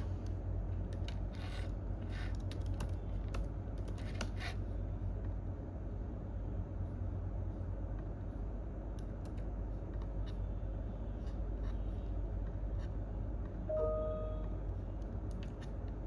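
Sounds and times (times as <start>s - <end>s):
office room hum: 0.0s - 16.0s
computer keyboard clicks: 2.2s - 4.4s
brief pitched tone: 13.7s - 14.6s.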